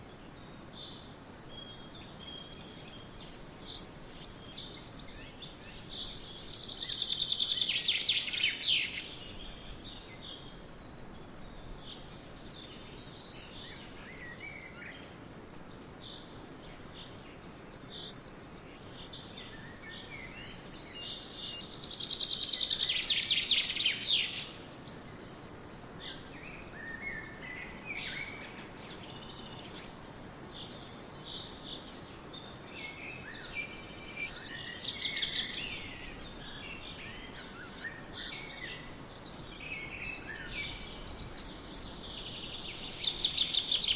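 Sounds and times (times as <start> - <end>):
steady background hiss: 0.0 - 43.9
bird chirps and calls: 0.9 - 10.6, 17.0 - 43.9
bird singing rapid trill: 17.0 - 43.9.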